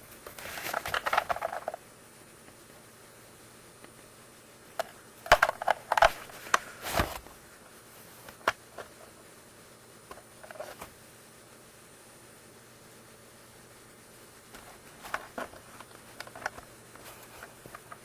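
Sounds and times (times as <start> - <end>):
hard plastic parts clicking: 0.6 - 1.8, 4.7 - 7.2, 14.6 - 16.7.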